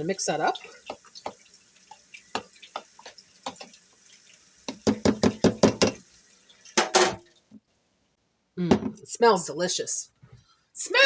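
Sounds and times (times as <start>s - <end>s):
spoon knocking container sides: 4.7s - 6.0s.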